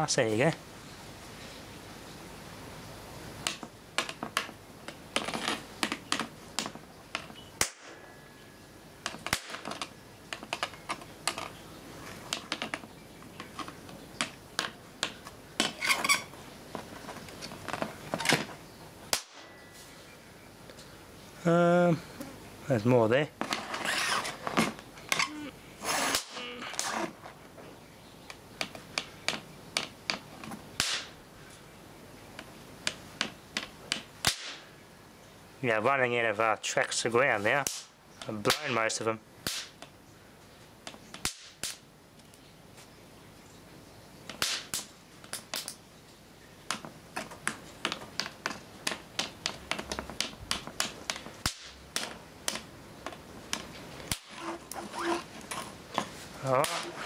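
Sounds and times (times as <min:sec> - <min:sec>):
sharp electrical snaps: 0:07.6 - 0:08.0, 0:09.1 - 0:09.7, 0:19.1 - 0:19.4, 0:25.2 - 0:27.1, 0:30.8 - 0:31.2, 0:33.9 - 0:34.7, 0:37.6 - 0:39.9, 0:41.1 - 0:41.8, 0:44.3 - 0:45.8, 0:48.9 - 0:52.7, 0:53.5 - 0:54.8, 0:56.5 - 0:57.0.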